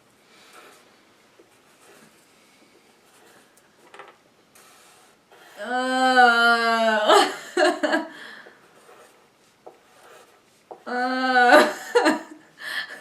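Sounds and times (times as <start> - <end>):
person laughing: 7.0 - 8.1.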